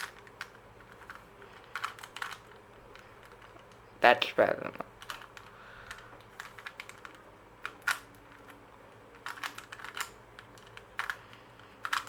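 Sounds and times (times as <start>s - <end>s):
puzzle cube plastic clicks: 0.0s - 3.8s, 4.9s - 12.0s.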